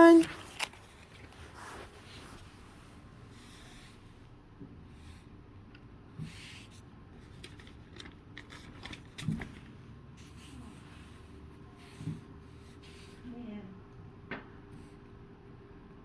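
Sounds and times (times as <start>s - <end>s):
plastic toy bricks clicking: 7.4s - 9.6s.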